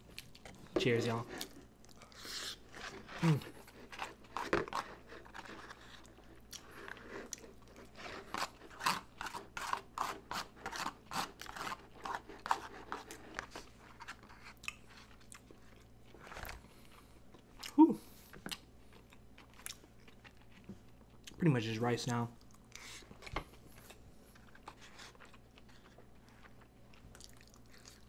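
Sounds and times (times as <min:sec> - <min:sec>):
wet chewing: 0:22.4 - 0:28.0.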